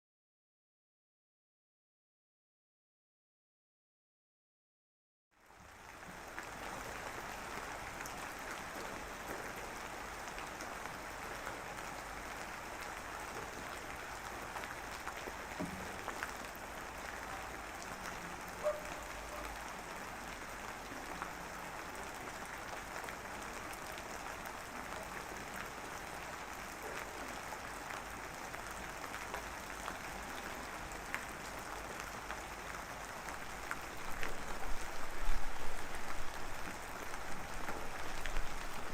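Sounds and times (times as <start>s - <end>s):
rain falling on a surface: 5.3s - 38.9s.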